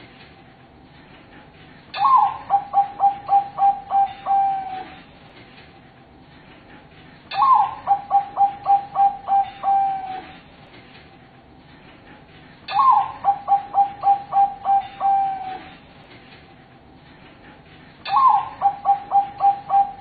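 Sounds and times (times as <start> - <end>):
dove cooing: 2.0 - 5.0, 7.4 - 10.4, 12.7 - 15.7, 18.1 - 20.0.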